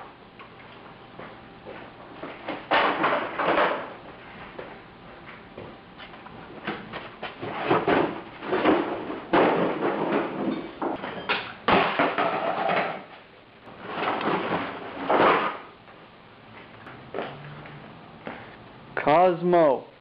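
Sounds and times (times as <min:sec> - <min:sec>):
junk clattering and scraping: 0:02.2 - 0:04.0, 0:06.4 - 0:15.7.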